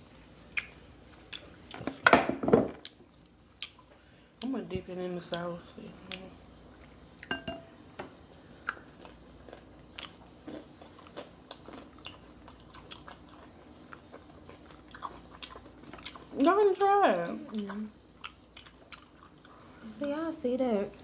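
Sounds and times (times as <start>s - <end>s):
person chewing food: 0.5s - 2.0s, 2.8s - 4.5s, 8.5s - 16.4s, 17.2s - 19.8s.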